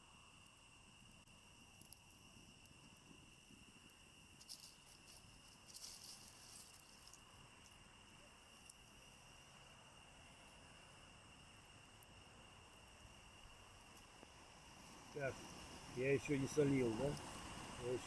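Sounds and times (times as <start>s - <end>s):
faint insect trill: 0.0s - 18.0s
soft crackles: 1.7s - 9.4s, 13.4s - 18.0s.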